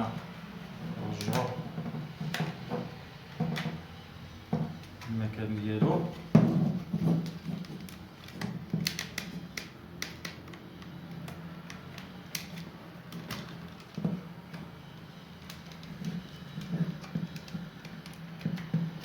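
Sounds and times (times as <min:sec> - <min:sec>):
plastic and metal parts clicking: 0:07.0 - 0:14.7, 0:15.4 - 0:18.9.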